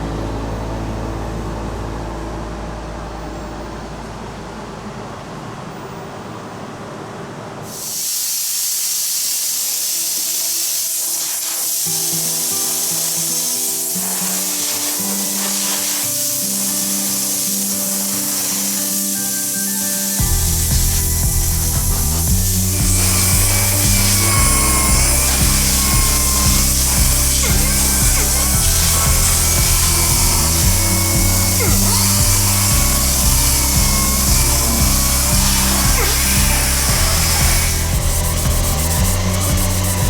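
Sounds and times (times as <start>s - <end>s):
background music with low drone: 0.0s - 5.2s, 14.0s - 40.0s
loud steady hiss: 7.6s - 40.0s.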